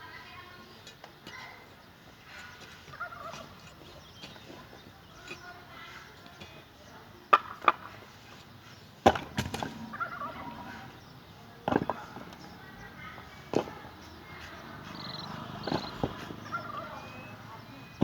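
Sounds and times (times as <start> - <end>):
sharp construction knocks: 9.0 - 9.9.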